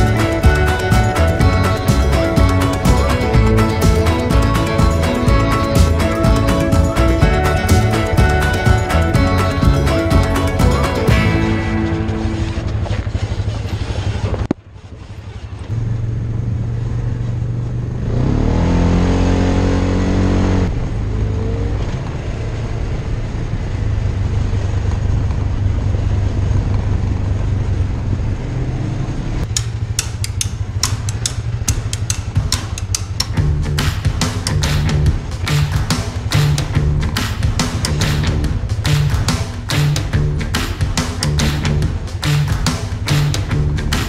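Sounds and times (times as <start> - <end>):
off-road vehicle engine revving: 0.0 - 44.0
sharp clicks and knocks: 29.4 - 43.5.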